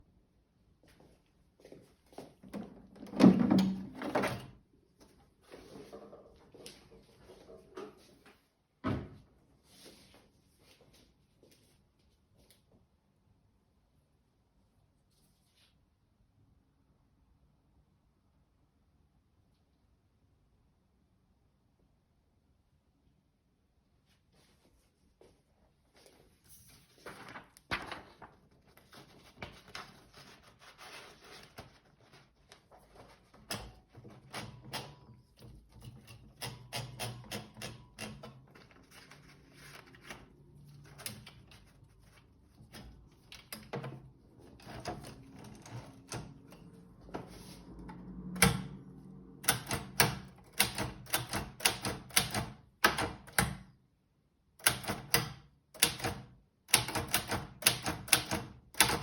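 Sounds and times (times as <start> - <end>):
typewriter key strikes: 49.4 - 53.6, 54.6 - 59.0.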